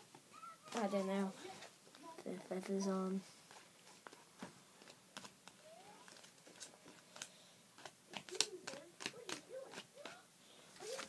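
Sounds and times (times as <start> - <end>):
paper bird handled and drawn on: 10.8 - 11.0.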